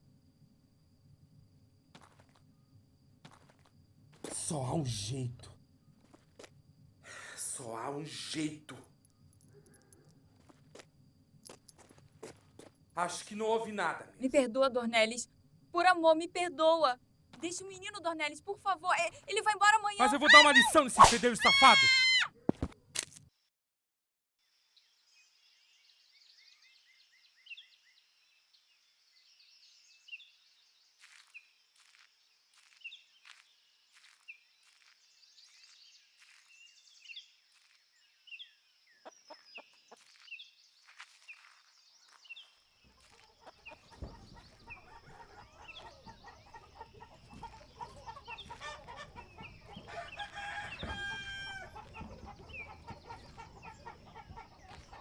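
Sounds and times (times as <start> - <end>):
hens clucking: 20.0 - 21.9, 43.0 - 55.0
rooster crowing: 20.0 - 22.3, 47.3 - 54.7
bird chirps: 38.0 - 55.0.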